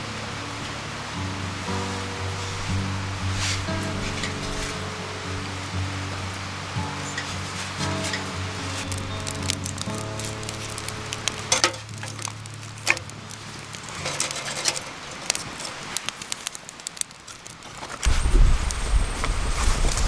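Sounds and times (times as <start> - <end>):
soft background music: 0.0 - 15.4
bonfire crackling and popping: 0.0 - 20.0
loud low rumble: 18.1 - 20.0.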